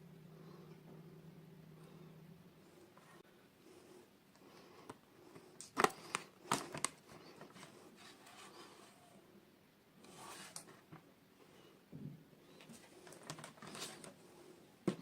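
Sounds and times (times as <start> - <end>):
plastic packaging clicks and snaps: 5.6 - 7.0
packaging rustle: 5.6 - 8.7, 12.9 - 14.2.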